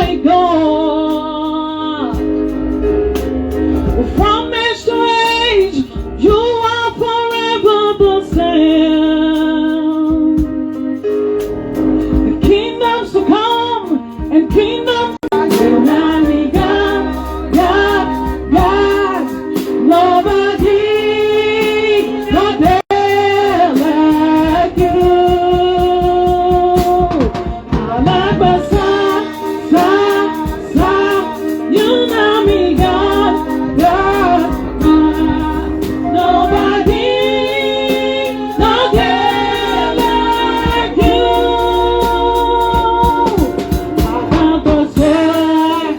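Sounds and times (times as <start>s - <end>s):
woman singing lead: 0.0s - 2.4s, 12.3s - 45.9s
keyboard bass and drums: 0.0s - 45.9s
choir singing: 15.3s - 25.5s, 27.6s - 45.9s.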